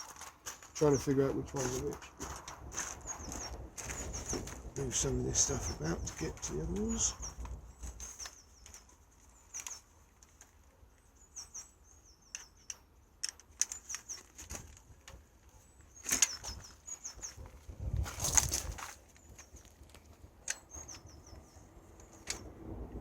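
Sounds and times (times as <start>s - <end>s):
small birds chirping: 0.0s - 23.0s.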